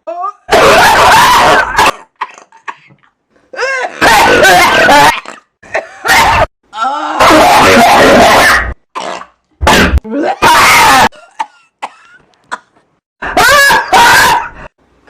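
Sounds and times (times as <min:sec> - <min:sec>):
person coughing: 0:03.6 - 0:06.2, 0:11.1 - 0:12.8.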